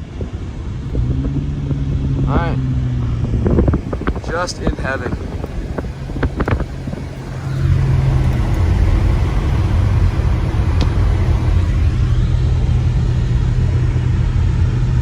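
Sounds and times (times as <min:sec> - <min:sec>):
engine and tyre rumble: 0:00.0 - 0:15.0.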